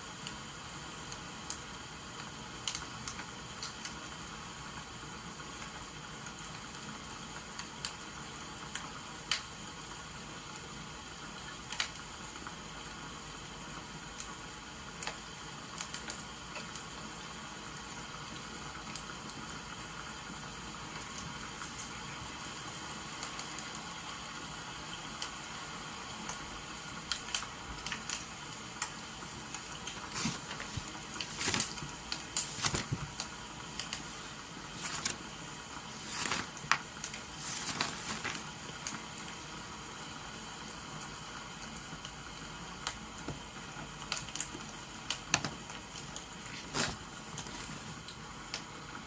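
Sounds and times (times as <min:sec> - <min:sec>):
rain hissing: 0:17.1 - 0:41.5.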